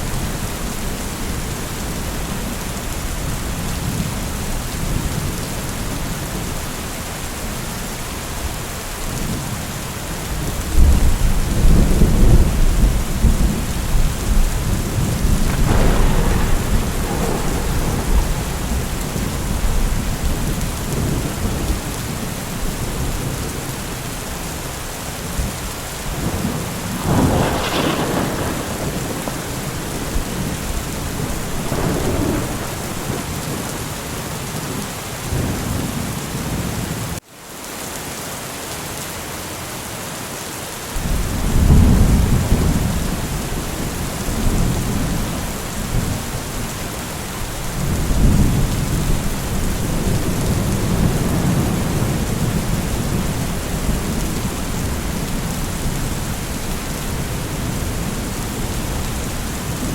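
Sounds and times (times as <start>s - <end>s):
heavy rain: 0.0s - 59.9s
low rolling thunder: 8.4s - 37.1s, 41.0s - 59.9s.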